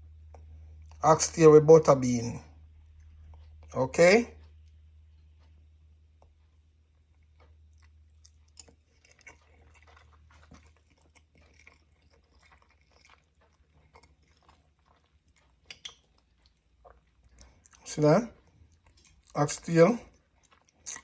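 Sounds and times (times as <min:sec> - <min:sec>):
person chewing: 0:07.0 - 0:21.0.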